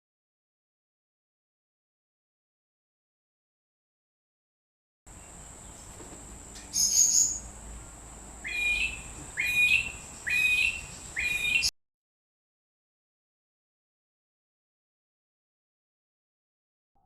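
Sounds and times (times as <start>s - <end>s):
higher bird chirp: 5.1s - 7.5s, 8.4s - 11.7s
bird calling upward sweeps: 6.7s - 7.5s, 8.4s - 11.7s.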